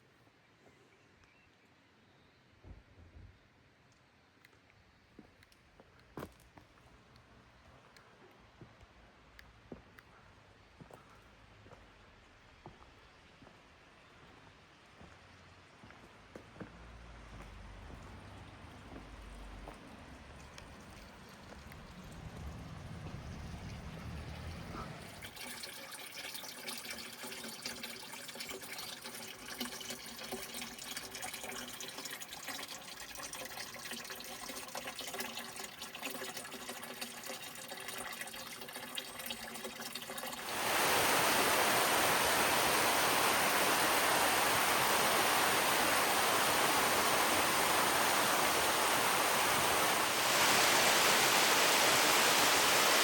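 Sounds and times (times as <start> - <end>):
stream trickling and splashing: 11.4 - 53.0
waterfall rushing: 40.4 - 53.0.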